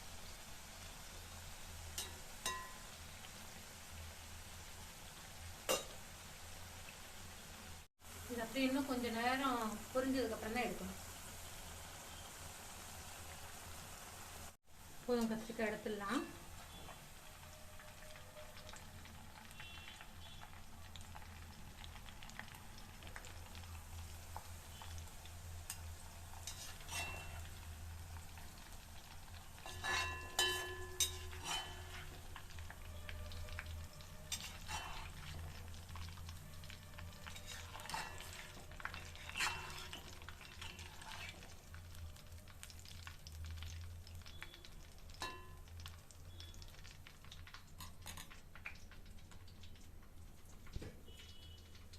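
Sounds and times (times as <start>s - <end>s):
eggplant sizzling in hot oil: 0.0s - 51.9s
metal spoon scraping and clinking: 26.4s - 27.5s, 29.6s - 32.6s, 34.3s - 35.5s, 37.2s - 41.5s.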